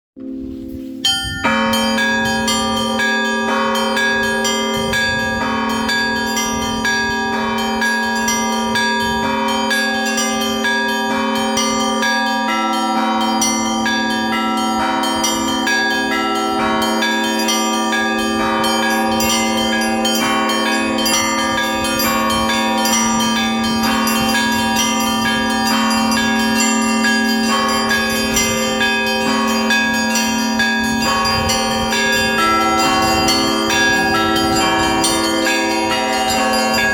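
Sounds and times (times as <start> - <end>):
large bells humming: 0.4 - 36.9
small bells striking rapidly: 1.1 - 36.9.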